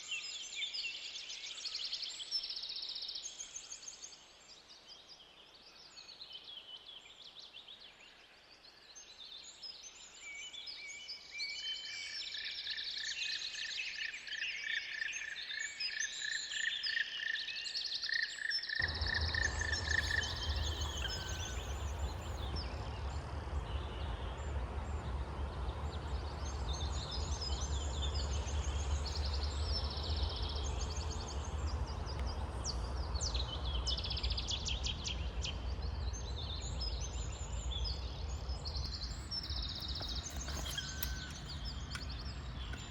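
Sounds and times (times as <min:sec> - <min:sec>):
small birds singing: 0:00.0 - 0:42.9
steady low rumble: 0:18.8 - 0:42.9.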